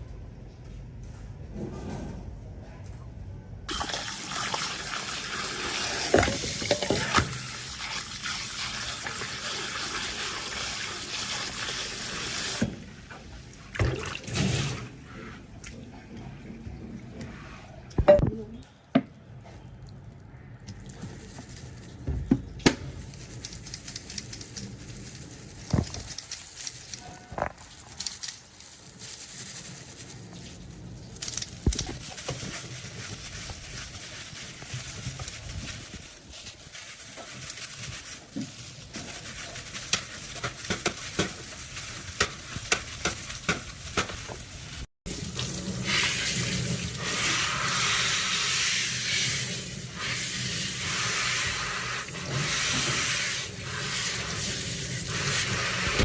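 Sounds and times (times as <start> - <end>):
oil spattering and popping: 22.6 - 39.0.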